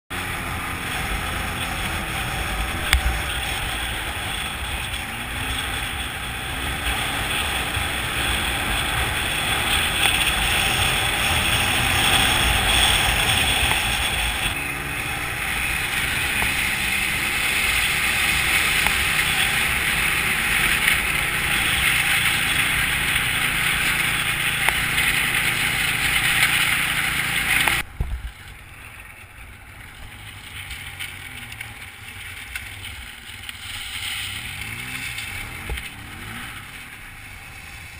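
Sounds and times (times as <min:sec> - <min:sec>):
atv engine rumble: 0:00.0 - 0:37.9
dense rushing noise: 0:00.1 - 0:37.9.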